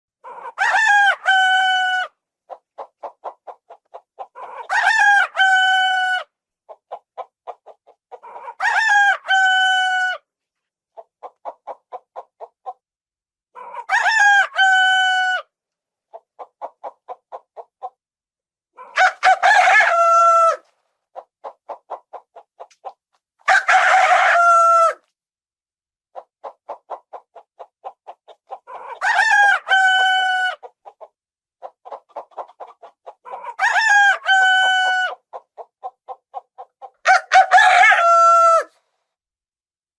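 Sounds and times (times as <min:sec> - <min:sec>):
rooster crowing: 0:00.6 - 0:02.1, 0:04.5 - 0:06.3, 0:08.5 - 0:10.2, 0:18.8 - 0:20.6, 0:23.5 - 0:25.0, 0:28.9 - 0:30.6, 0:33.5 - 0:35.2, 0:37.0 - 0:38.7.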